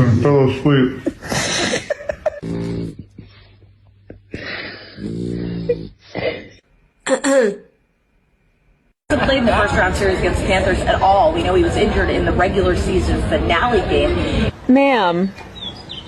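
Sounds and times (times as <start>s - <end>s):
dog snoring: 2.4s - 3.4s, 4.4s - 6.0s
dog groaning: 2.4s - 3.5s, 4.7s - 6.2s.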